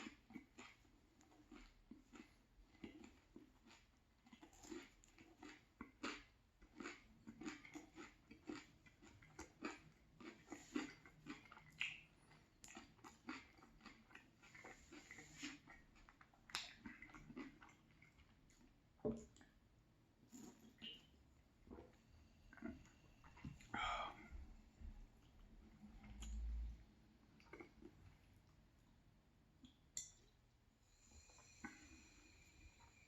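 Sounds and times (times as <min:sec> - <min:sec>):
crunchy chewing: 0:00.0 - 0:18.7
wet mouth sounds: 0:09.3 - 0:19.5.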